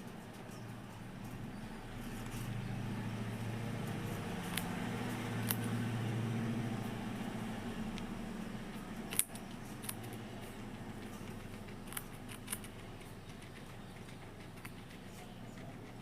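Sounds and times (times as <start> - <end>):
low hum: 0.0 - 16.0
guinea pig crunching carrot: 1.9 - 16.0.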